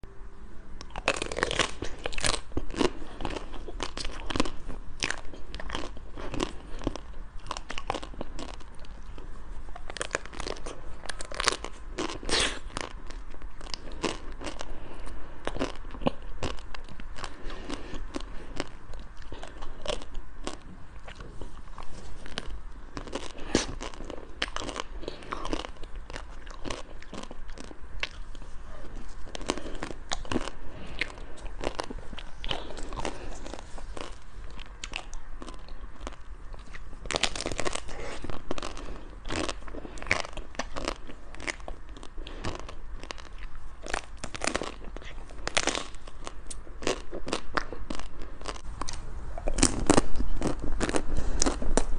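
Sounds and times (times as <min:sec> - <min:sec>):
crunching bites of ice cream: 0:00.8 - 0:51.9.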